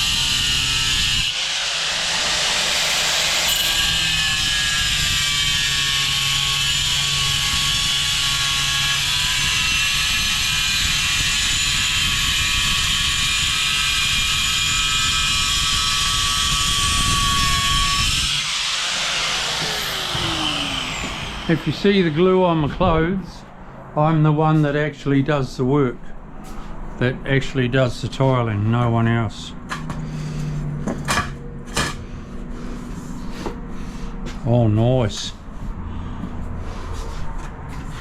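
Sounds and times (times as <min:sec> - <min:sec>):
power saw cutting tile: 0:00.0 - 0:23.1.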